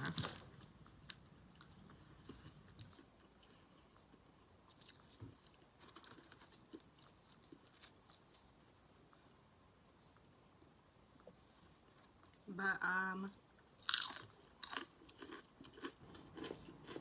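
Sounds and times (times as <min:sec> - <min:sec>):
person chewing: 0:00.2 - 0:08.8, 0:13.8 - 0:17.0.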